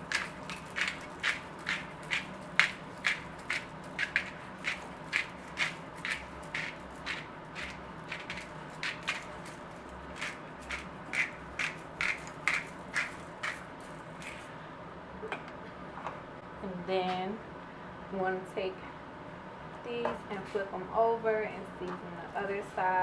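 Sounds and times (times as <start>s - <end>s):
spice shaker rattling: 0.0s - 14.5s.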